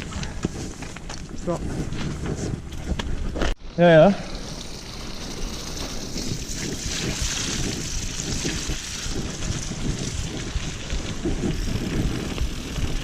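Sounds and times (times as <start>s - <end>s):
mountain bike rattling on trail: 0.0s - 13.0s
wind on microphone: 4.4s - 13.0s.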